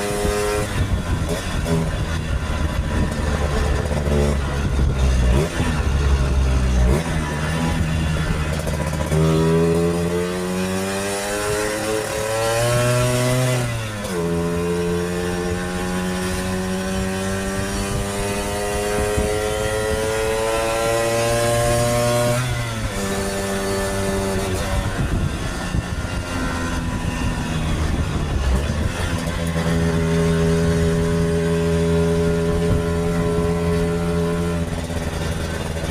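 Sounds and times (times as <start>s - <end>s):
scooter engine revving: 0.0s - 35.9s.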